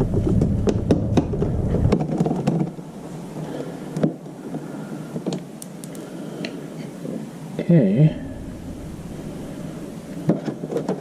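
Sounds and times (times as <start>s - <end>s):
hands rubbing and knocking plastic: 0.0s - 2.9s
light clicks: 5.3s - 6.6s.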